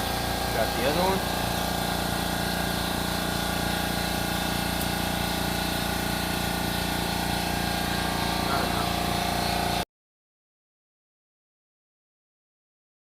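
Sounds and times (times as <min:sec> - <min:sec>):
air compressor running: 0:00.0 - 0:09.8.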